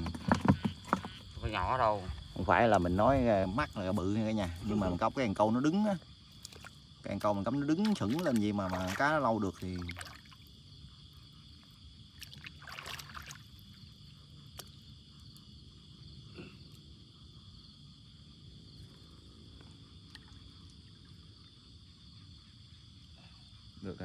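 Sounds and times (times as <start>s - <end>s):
insects chirring: 0.0s - 24.0s.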